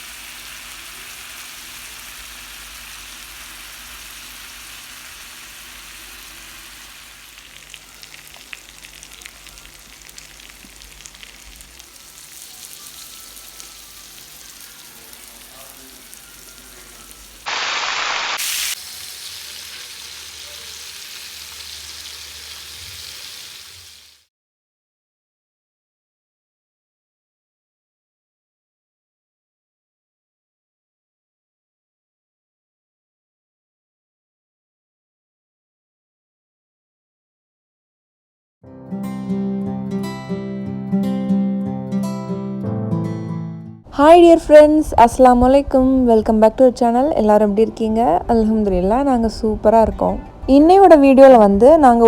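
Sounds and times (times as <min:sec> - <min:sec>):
meat sizzling on a griddle: 0:00.0 - 0:24.3
crackling pops: 0:17.5 - 0:18.8.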